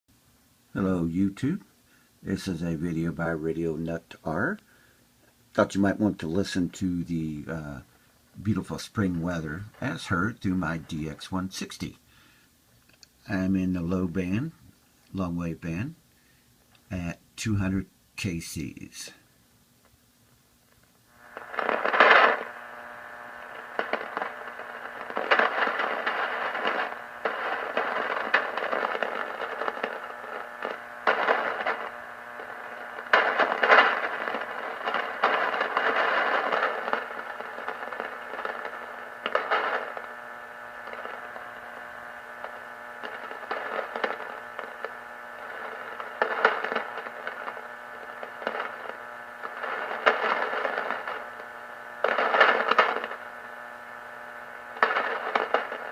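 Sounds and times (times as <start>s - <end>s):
radio static hiss and hum: 0.6s - 16.1s, 16.8s - 19.3s, 20.7s - 55.9s
loud static crackling crashes: 5.6s - 12.0s, 21.1s - 55.9s.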